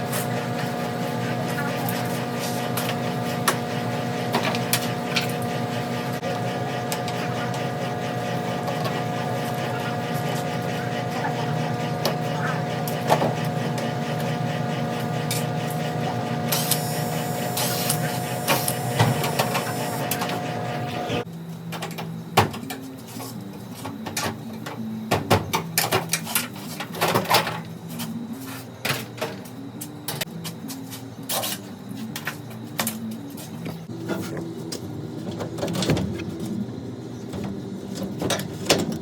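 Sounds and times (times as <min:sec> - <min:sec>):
small electric motor humming: 0:00.0 - 0:21.3.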